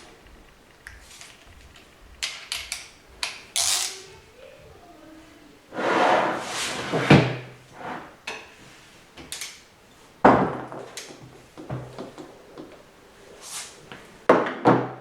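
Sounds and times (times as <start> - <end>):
tools scraping and rattling: 5.7 - 8.2.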